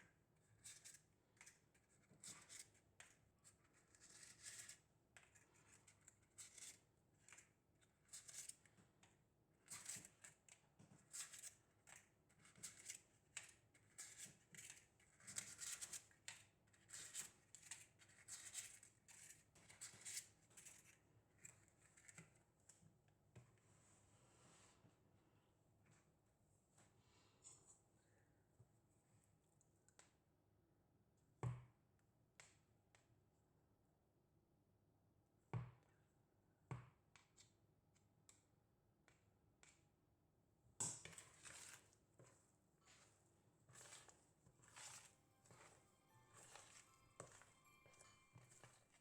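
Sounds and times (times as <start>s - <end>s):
faint handling scrapes: 41.2s - 49.0s.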